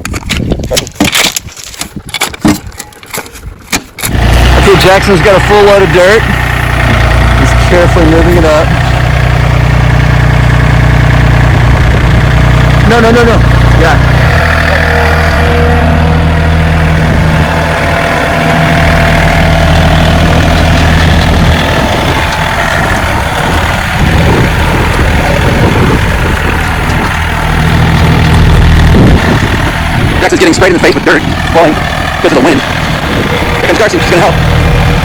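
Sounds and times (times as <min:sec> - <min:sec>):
wind gusting on microphone: 0:00.0 - 0:04.8, 0:11.0 - 0:12.7, 0:15.2 - 0:35.0
tractor diesel engine running: 0:00.0 - 0:35.0.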